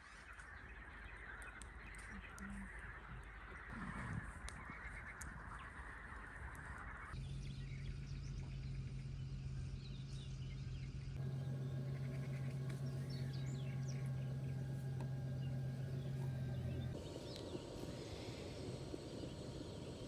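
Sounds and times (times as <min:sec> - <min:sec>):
steady low hum: 0:11.1 - 0:20.0
small birds chirping: 0:11.2 - 0:20.0.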